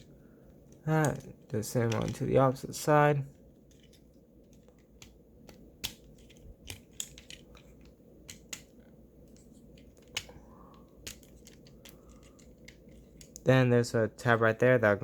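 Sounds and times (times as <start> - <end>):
plastic toy parts clicking: 0.7 - 2.3, 3.7 - 13.4.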